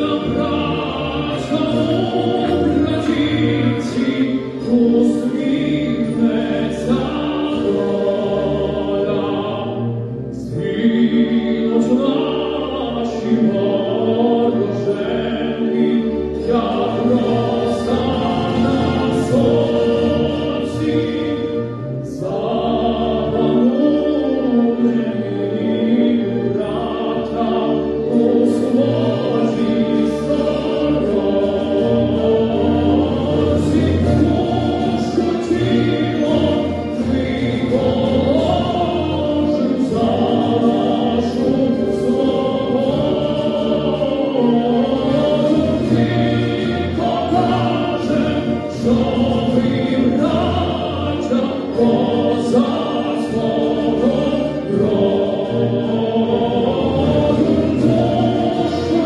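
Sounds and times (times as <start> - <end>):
choir singing: 0.0 - 59.0.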